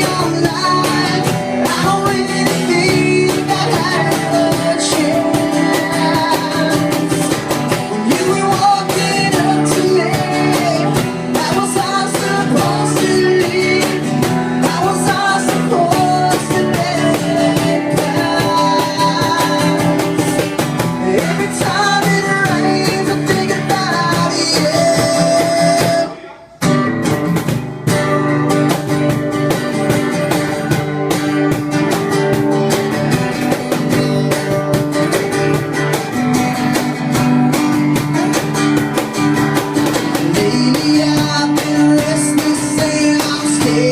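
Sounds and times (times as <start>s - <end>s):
person singing: 0.0s - 26.6s, 40.0s - 43.9s
cajon beat: 0.0s - 43.9s
strummed acoustic guitar: 0.0s - 43.9s.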